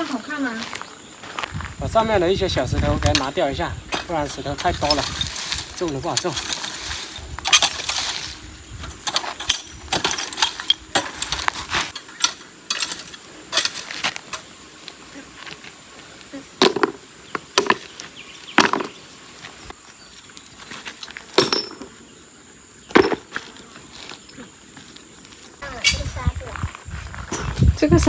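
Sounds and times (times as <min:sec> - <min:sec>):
stones clinking against stones: 0:02.8 - 0:15.8, 0:16.5 - 0:19.0, 0:20.2 - 0:21.9.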